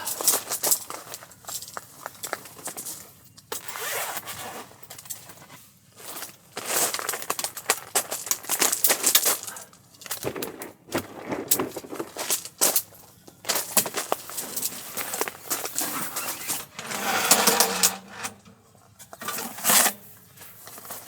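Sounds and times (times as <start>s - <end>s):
clicks and knocks: 10.2s - 12.4s
rustling: 10.2s - 12.9s.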